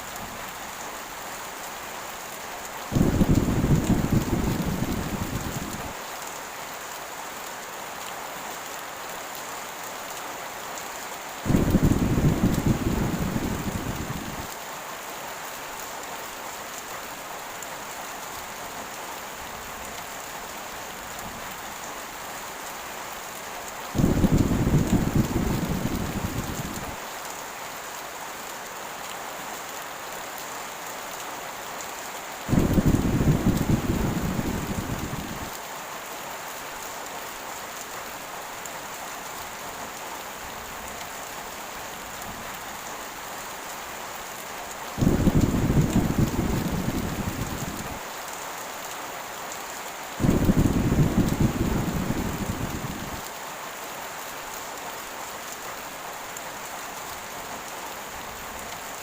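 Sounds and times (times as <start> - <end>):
heavy rain falling: 0.0 - 59.0
thunder rolling: 3.0 - 5.9, 11.5 - 14.5, 24.0 - 27.0, 32.5 - 35.5, 45.0 - 48.0, 50.2 - 53.2.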